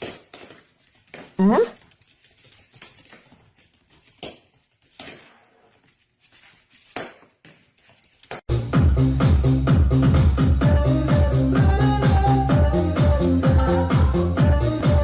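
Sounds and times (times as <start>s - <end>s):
soft patter: 0.0s - 8.4s.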